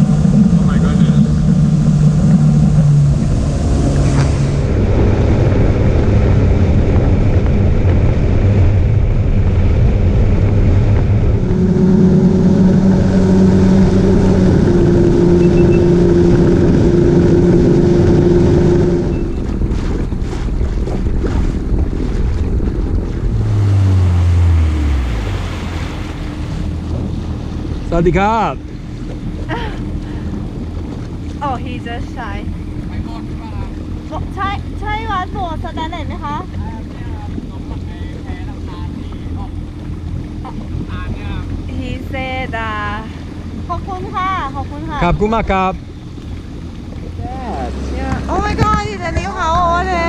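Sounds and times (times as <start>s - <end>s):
small boat engine running: 0.0s - 50.0s
water rushing past hull: 0.0s - 50.0s
wind buffeting microphone: 0.0s - 50.0s.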